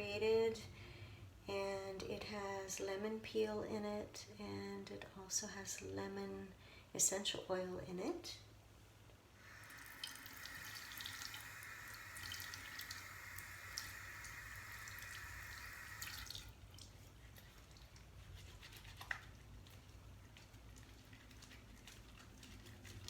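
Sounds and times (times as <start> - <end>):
tap water spattering on soap: 9.8 - 17.0
wet clicking of hands lathering: 16.0 - 23.0.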